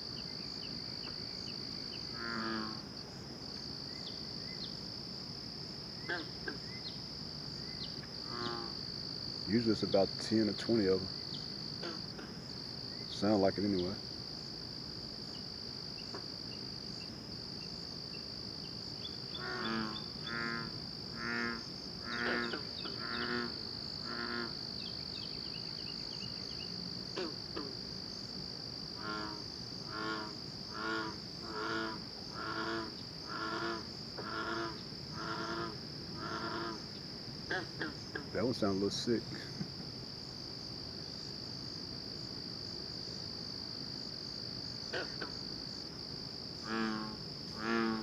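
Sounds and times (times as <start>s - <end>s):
high-pitched insect chorus: 0.0s - 48.0s
frogs calling: 0.1s - 2.9s, 6.0s - 7.0s, 7.6s - 14.5s, 15.2s - 39.8s, 44.7s - 45.8s, 46.6s - 48.0s.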